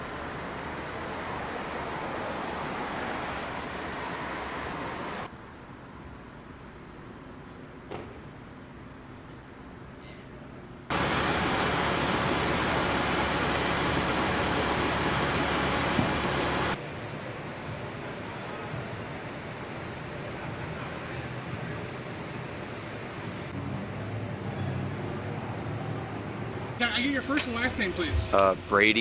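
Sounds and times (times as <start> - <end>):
street noise: 0.0 - 29.0
crickets chirping: 5.3 - 11.0
loud steady noise: 10.9 - 22.3.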